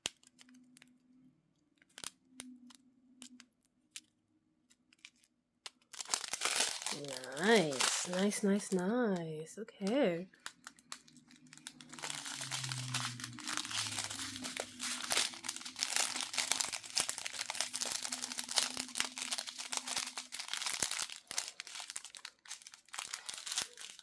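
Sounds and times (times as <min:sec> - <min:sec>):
plastic bags crinkling: 0:05.0 - 0:24.0.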